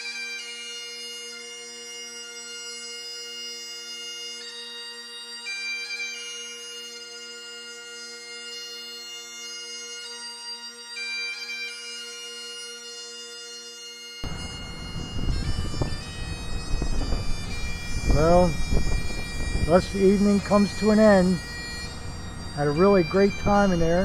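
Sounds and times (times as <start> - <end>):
bagpipes playing slow tune: 0.0 - 24.0.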